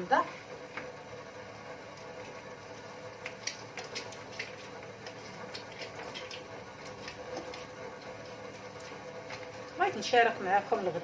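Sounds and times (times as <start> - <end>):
juice dripping and spattering: 1.7 - 10.0.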